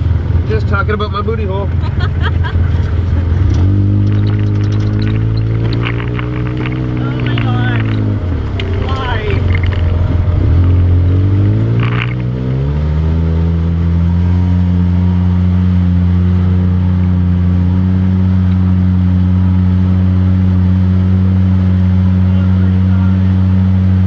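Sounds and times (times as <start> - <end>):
atv engine accelerating: 0.0 - 24.0.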